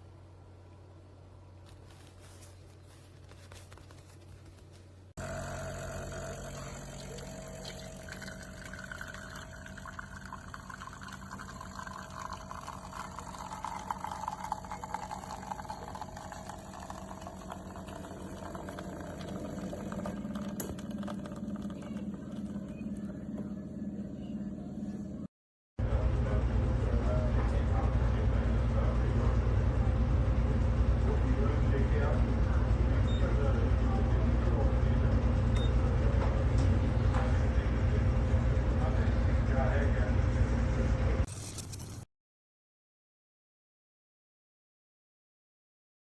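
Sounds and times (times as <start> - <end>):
espresso machine pump drone: 5.2 - 41.2
water pouring: 6.6 - 22.7.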